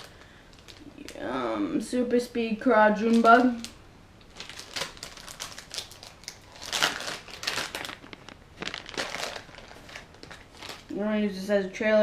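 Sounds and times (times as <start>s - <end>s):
plastic bag crinkling: 0.0s - 1.4s, 2.9s - 11.1s.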